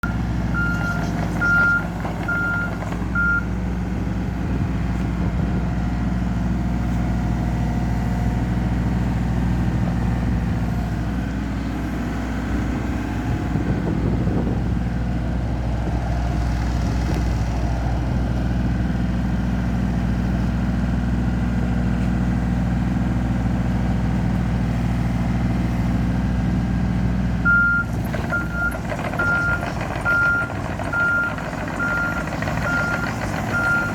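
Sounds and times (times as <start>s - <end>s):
travel alarm beeping: 0.0s - 3.5s
diesel engine running: 0.0s - 33.9s.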